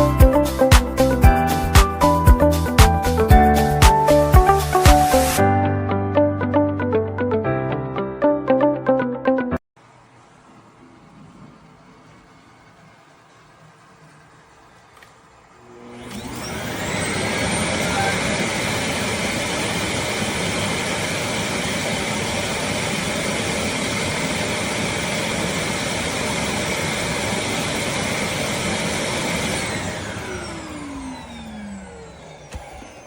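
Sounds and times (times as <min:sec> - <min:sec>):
vacuum suction motor whining: 0:10.5 - 0:33.0.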